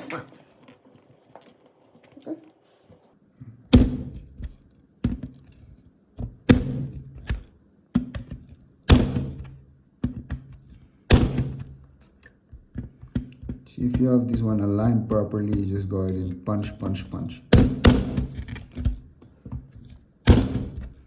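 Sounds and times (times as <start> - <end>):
punch-down tool thunks: 11.1 - 11.8, 20.3 - 21.0.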